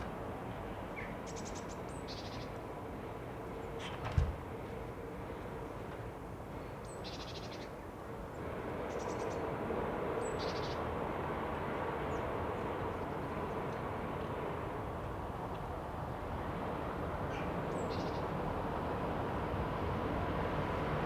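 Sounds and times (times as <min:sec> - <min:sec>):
distant traffic rumble: 0:08.2 - 0:21.0.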